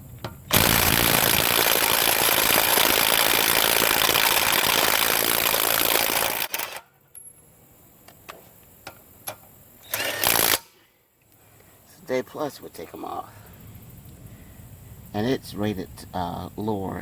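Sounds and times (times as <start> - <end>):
sharp clicks: 0.2 - 6.9
impact wrench rattling: 0.5 - 6.9, 9.9 - 10.7
short burst of noise: 0.5 - 6.9.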